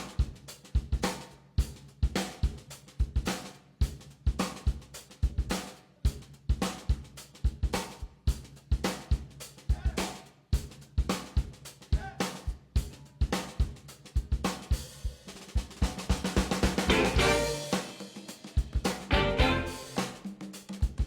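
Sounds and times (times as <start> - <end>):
drum kit beat: 0.0 - 21.0
pitched instruments: 16.9 - 18.3, 19.1 - 20.4.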